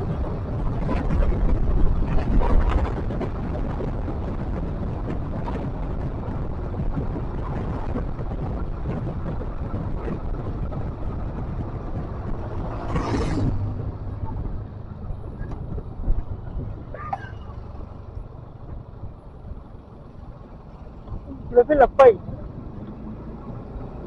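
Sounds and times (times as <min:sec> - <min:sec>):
moving vehicle rumble: 0:00.0 - 0:24.0
wind buffeting microphone: 0:00.0 - 0:24.0
vehicle passing whoosh: 0:10.1 - 0:18.8.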